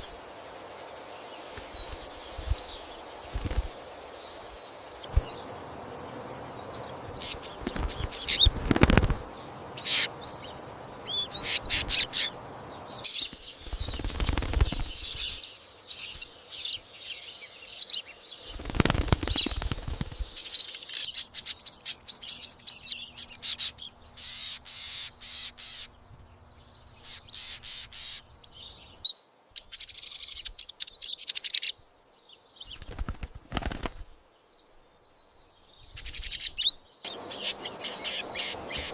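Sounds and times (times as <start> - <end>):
flapping or rustling: 1.5 - 3.8, 7.6 - 9.3, 13.2 - 15.3, 18.5 - 20.4, 32.7 - 34.2
goldfinch chirping: 6.4 - 18.6, 19.2 - 31.8, 35.0 - 38.9.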